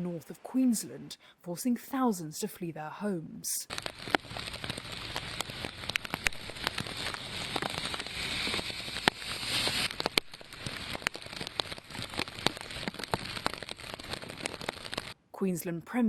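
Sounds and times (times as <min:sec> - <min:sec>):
rain falling: 0:03.7 - 0:15.2.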